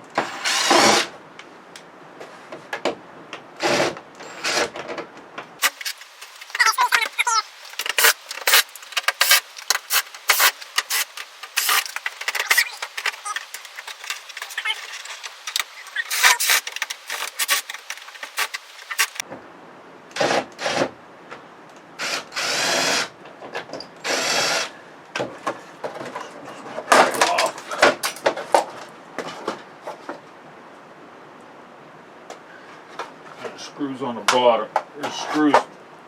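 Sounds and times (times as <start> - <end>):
power drill bursts: 0.2 - 1.1, 24.0 - 24.7
clicks and knocks of parts: 4.2 - 19.2.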